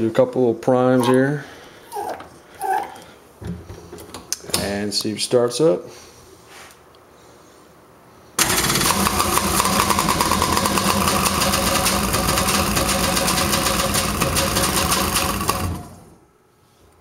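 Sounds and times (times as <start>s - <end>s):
two-stroke engine starting and running: 8.4s - 16.2s.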